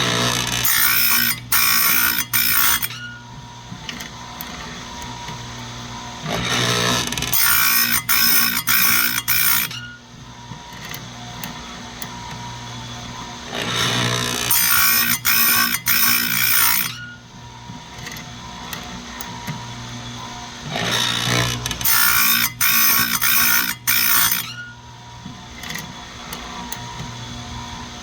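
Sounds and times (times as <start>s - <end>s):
grinding wheel on chain teeth: 0.0s - 3.0s, 6.3s - 10.0s, 13.5s - 17.1s, 20.7s - 24.7s.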